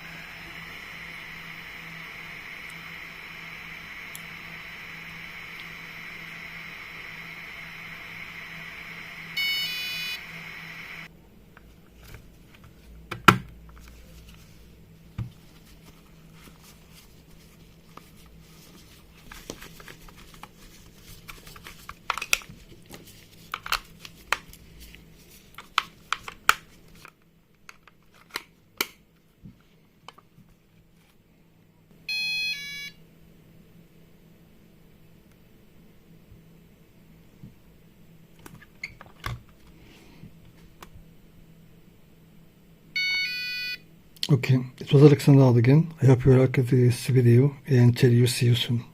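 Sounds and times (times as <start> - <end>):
electronic beep sequence: 9.3 - 10.2.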